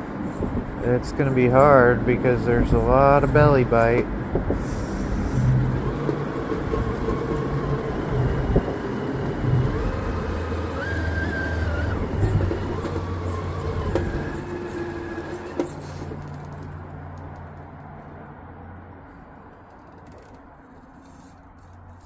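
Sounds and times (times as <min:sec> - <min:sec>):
electric motor whining: 0:04.7 - 0:16.7.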